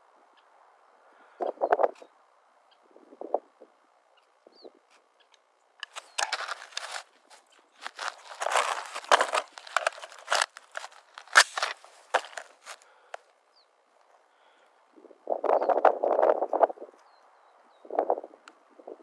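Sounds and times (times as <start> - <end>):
footsteps crunching on rough ground: 5.8 - 13.2.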